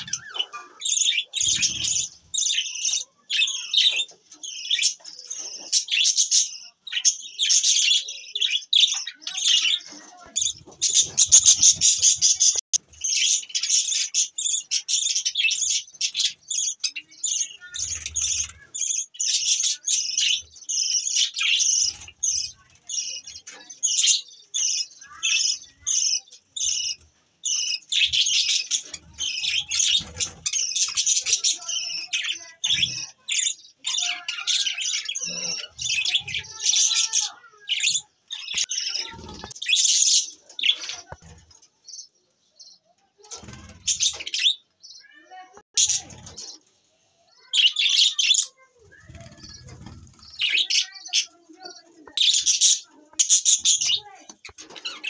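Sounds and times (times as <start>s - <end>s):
budgerigars chirping: 0.0s - 36.6s, 52.0s - 55.0s.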